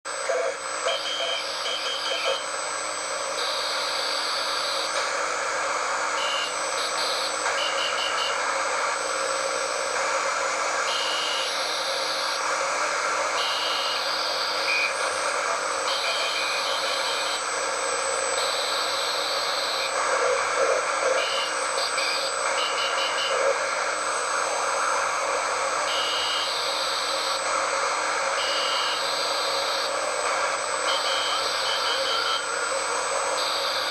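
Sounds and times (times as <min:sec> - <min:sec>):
radio static hiss: 0:00.2 - 0:02.6, 0:09.9 - 0:17.4, 0:18.3 - 0:24.4, 0:25.0 - 0:33.9.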